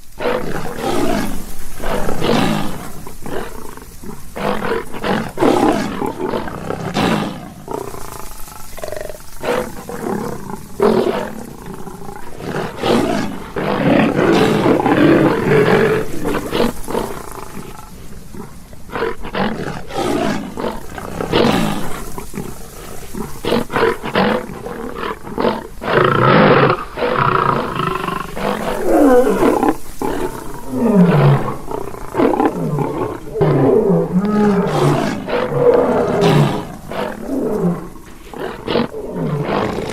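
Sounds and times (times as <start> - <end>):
lion roaring and growling: 0.1 - 39.9.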